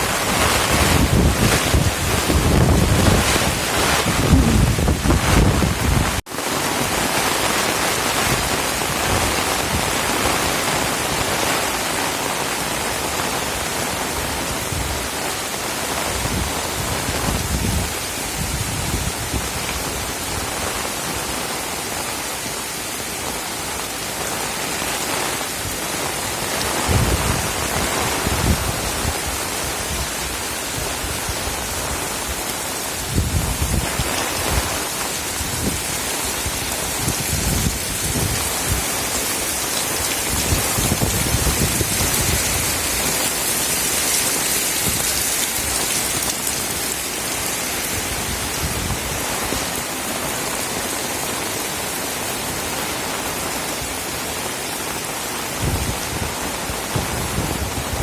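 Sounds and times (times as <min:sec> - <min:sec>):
heavy rain hissing: 0:00.0 - 0:58.0.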